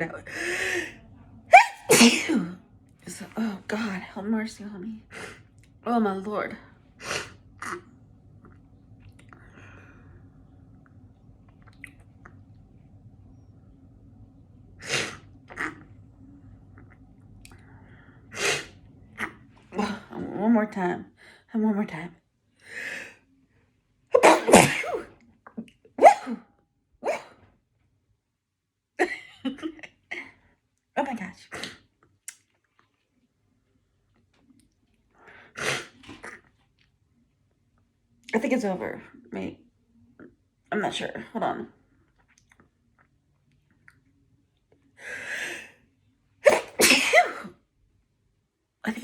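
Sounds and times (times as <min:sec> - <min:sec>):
in-breath: 0:00.3 - 0:01.0, 0:09.3 - 0:10.4, 0:17.5 - 0:18.8, 0:22.6 - 0:23.2, 0:45.0 - 0:45.8
woman sneezing: 0:01.5 - 0:02.6, 0:24.2 - 0:25.1, 0:26.0 - 0:26.4, 0:46.4 - 0:47.6.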